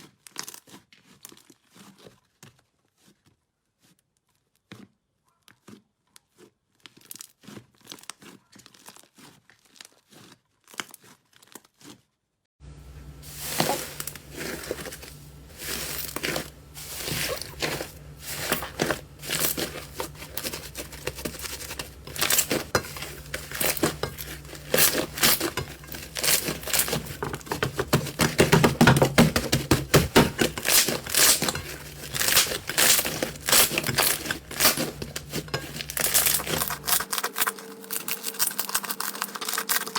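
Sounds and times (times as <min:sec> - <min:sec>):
steady low hum: 0:12.6 - 0:38.5.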